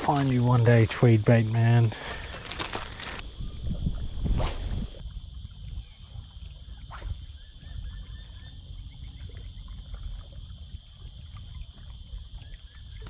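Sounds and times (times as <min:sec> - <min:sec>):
insects buzzing: 0:00.0 - 0:13.0
small chirps: 0:02.0 - 0:13.0
wind rumble: 0:02.3 - 0:12.4
water: 0:05.0 - 0:13.0.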